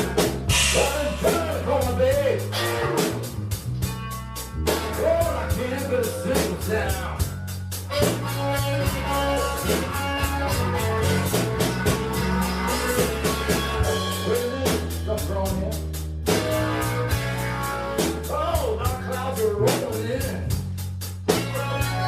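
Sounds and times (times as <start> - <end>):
lead line bending notes: 0.0 - 15.4
bass notes: 0.0 - 22.0
drum kit: 0.0 - 22.0.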